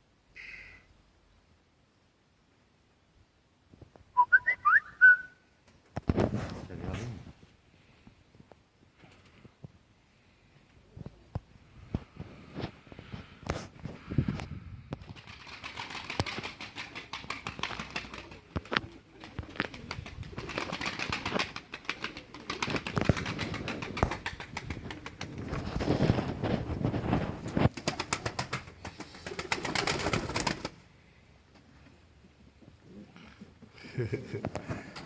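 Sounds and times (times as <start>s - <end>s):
wings fluttering: 15.0s - 30.9s.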